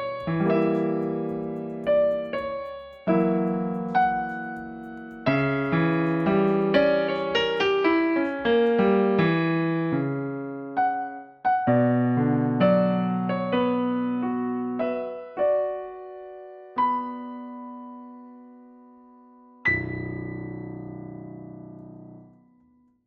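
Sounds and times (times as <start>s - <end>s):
solo piano melody: 0.0s - 23.0s.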